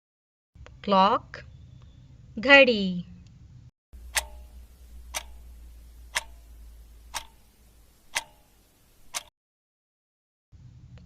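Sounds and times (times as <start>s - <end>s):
clock ticking: 4.0s - 9.3s.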